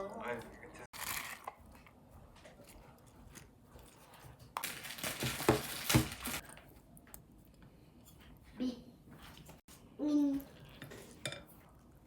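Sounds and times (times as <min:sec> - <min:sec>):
rustling crinkling handling noise: 0:04.3 - 0:06.6.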